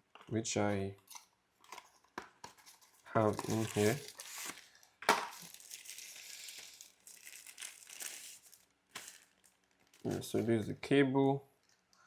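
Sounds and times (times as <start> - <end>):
packaging rustling and crinkling: 1.6 - 10.5.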